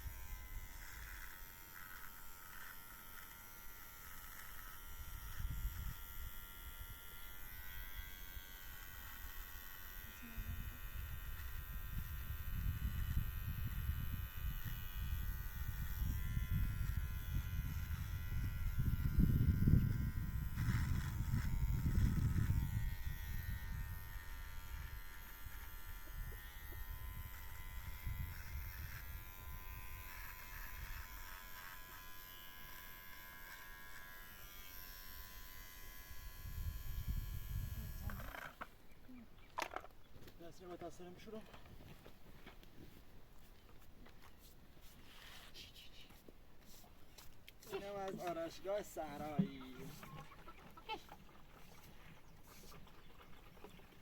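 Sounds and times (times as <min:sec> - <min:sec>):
electric hair clippers buzzing: 0:00.0 - 0:38.7, 0:47.7 - 0:50.0.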